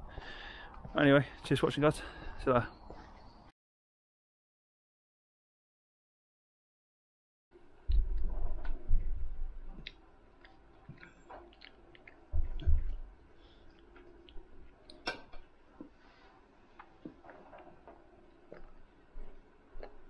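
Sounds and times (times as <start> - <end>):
low bumps and thuds: 12.3 - 13.0.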